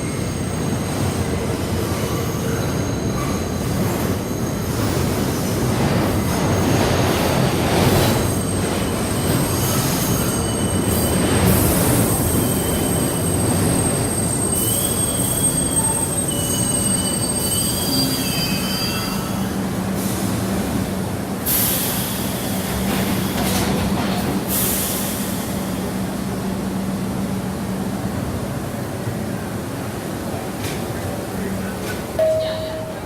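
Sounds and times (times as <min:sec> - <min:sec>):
train wheels squealing on rails: 0:00.0 - 0:20.8, 0:21.4 - 0:26.2
low train hum: 0:00.0 - 0:33.0.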